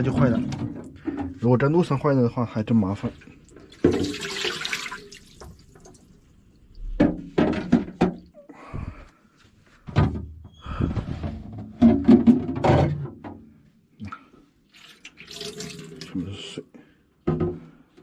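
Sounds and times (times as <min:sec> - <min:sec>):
objects knocking and clattering: 0:00.0 - 0:01.5, 0:03.7 - 0:04.6, 0:06.8 - 0:08.4, 0:09.9 - 0:13.5.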